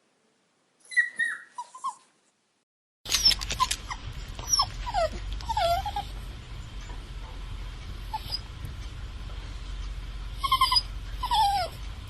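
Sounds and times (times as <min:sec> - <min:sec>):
low background hum: 0:00.0 - 0:12.0
puppy whining: 0:00.8 - 0:02.1, 0:03.1 - 0:06.2, 0:08.1 - 0:08.5, 0:10.3 - 0:11.8
dog whimpering: 0:00.9 - 0:02.1, 0:03.2 - 0:06.2, 0:08.1 - 0:08.5, 0:10.4 - 0:11.8.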